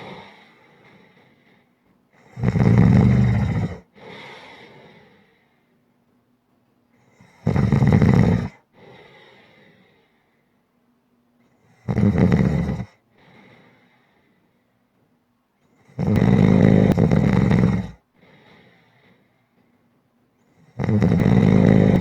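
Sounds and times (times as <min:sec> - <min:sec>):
person snoring: 0:02.2 - 0:04.6, 0:07.2 - 0:08.6, 0:11.8 - 0:12.9, 0:15.9 - 0:18.0, 0:20.7 - 0:22.0
soft breath out: 0:04.0 - 0:05.8, 0:08.7 - 0:10.6, 0:13.1 - 0:14.8, 0:18.2 - 0:19.8.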